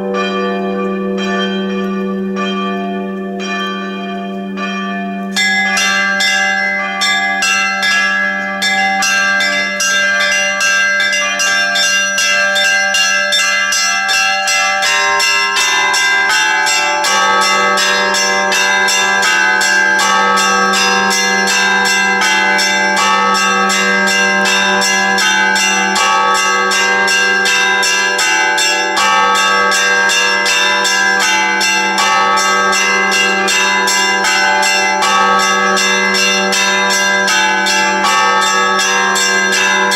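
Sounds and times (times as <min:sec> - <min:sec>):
deep bell humming: 0:00.0 - 0:10.0
church bells ringing: 0:00.0 - 0:39.9.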